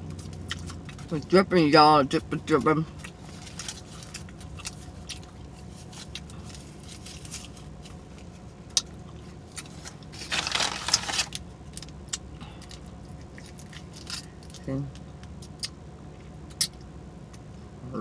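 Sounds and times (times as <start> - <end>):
wet chewing and smacking: 0.0 - 1.3, 2.9 - 10.1, 11.8 - 14.6
low steady hum: 0.0 - 18.0.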